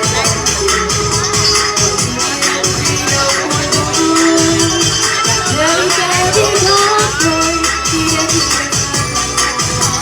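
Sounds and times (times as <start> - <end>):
background music with steady beat: 0.0 - 10.0
shaker rhythm: 0.0 - 10.0.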